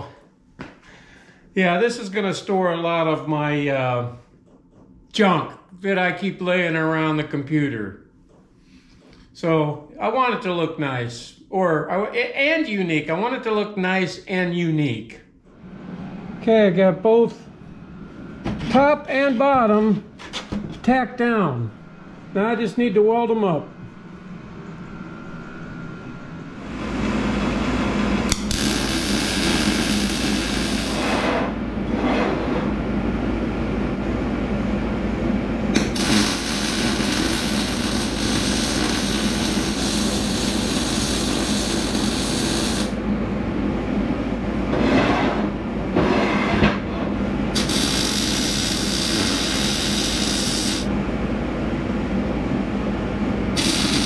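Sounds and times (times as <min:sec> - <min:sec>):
low hum: 0:15.2 - 0:20.2, 0:20.8 - 0:54.0
welder crackling sizzle: 0:28.3 - 0:31.3, 0:35.8 - 0:43.0, 0:47.6 - 0:50.9, 0:53.6 - 0:54.0.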